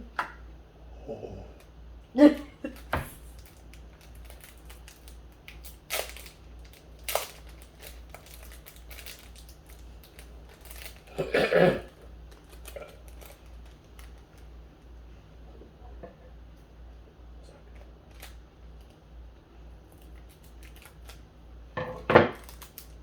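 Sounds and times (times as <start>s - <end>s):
person coughing: 2.2s - 3.2s, 11.1s - 11.9s
crinkling and clicks of handling: 2.7s - 11.2s, 11.9s - 15.0s, 17.7s - 19.0s, 19.9s - 23.0s.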